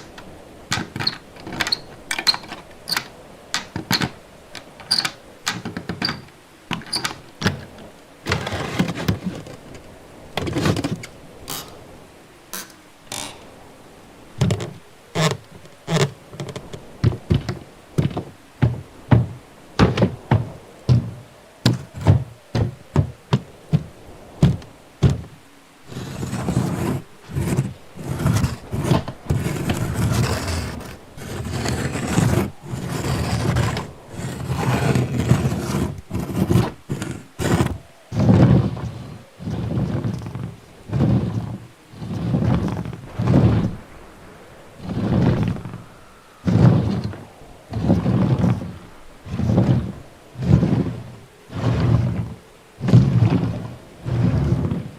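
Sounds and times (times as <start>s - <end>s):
door thunks and knocks: 17.0s - 21.1s.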